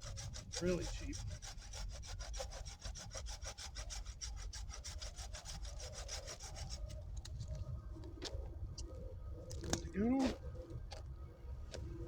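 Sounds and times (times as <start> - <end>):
hand saw cutting wood: 0.0 - 6.8.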